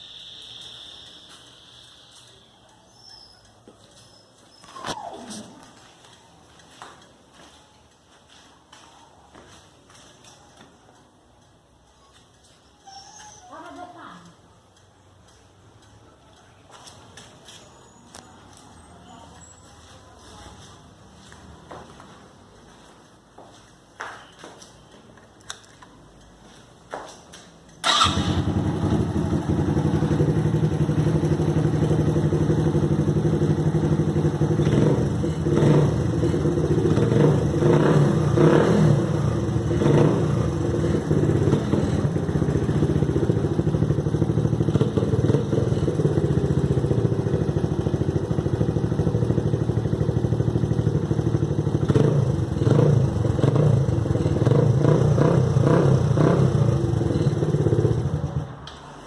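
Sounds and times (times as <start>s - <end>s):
motorcycle engine rumble: 14.4s - 59.0s.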